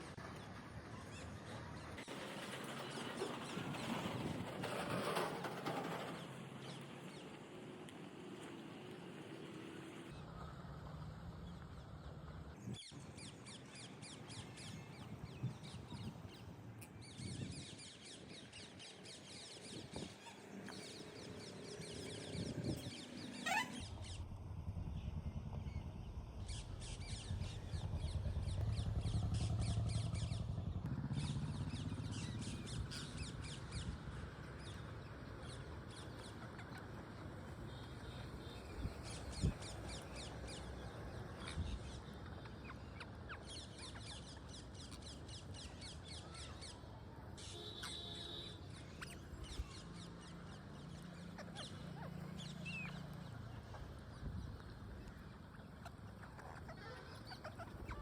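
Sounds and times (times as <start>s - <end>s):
parrots chattering: 23.4s - 23.9s, 55.5s - 58.0s
low background rumble: 23.7s - 35.6s.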